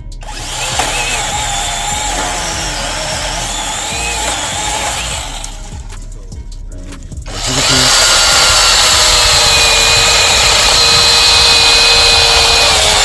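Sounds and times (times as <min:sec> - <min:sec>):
electric chainsaw whining: 0:00.2 - 0:05.8, 0:07.3 - 0:13.0.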